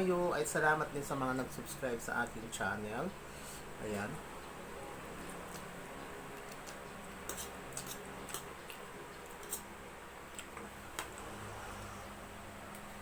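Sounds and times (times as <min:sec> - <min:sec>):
low steady hum: 0:00.0 - 0:13.0
chewing and utensil clicks: 0:06.3 - 0:09.7, 0:10.3 - 0:11.2.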